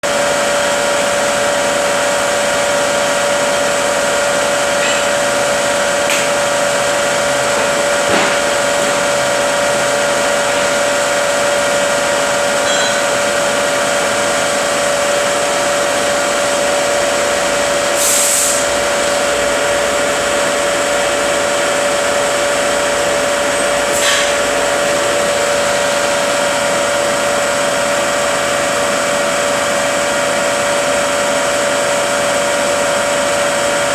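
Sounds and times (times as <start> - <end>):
transmission gear whine: 0.1 - 33.9.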